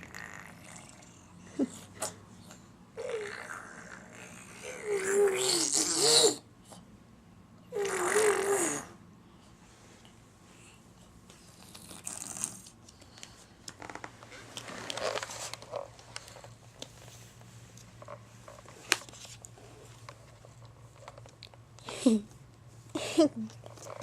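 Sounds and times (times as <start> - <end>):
rustling and crinkling: 11.2 - 21.7.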